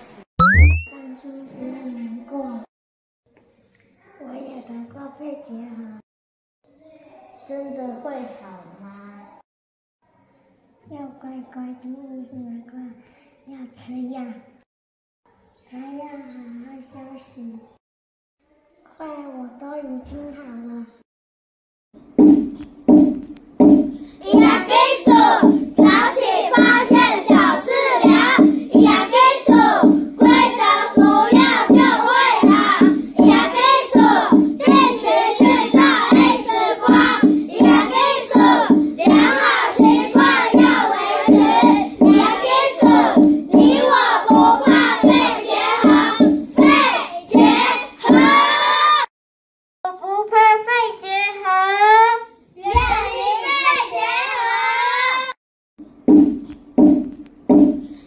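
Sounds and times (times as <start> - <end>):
steady beat: 22.9 - 47.8, 56.0 - 57.9
children singing: 24.3 - 49.1, 52.7 - 55.4.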